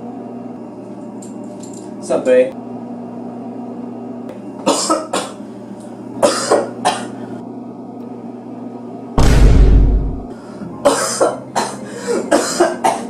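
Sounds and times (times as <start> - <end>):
person coughing: 4.7 - 5.4, 6.2 - 7.2, 10.8 - 13.0.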